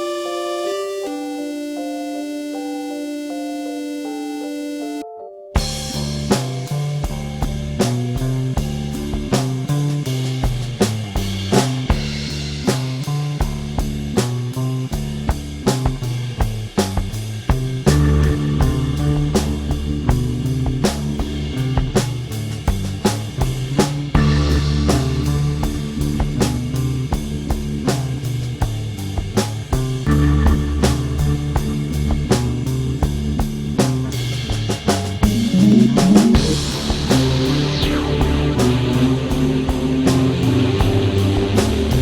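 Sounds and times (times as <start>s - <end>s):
lead guitar line bending upward: 0.0s - 9.6s, 17.9s - 22.3s, 24.1s - 28.6s, 29.8s - 34.4s, 35.2s - 42.0s
instrumental rock music: 0.0s - 42.0s.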